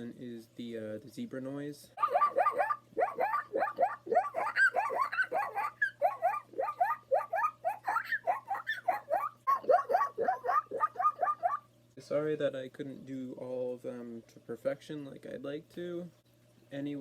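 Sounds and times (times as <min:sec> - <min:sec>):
man imitating animal yelps: 0:02.0 - 0:11.6.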